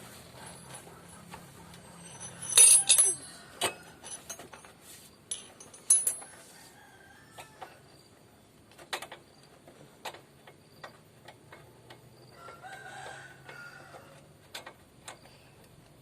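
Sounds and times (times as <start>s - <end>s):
metal hand tools clinking: 1.8s - 4.7s, 5.3s - 6.4s.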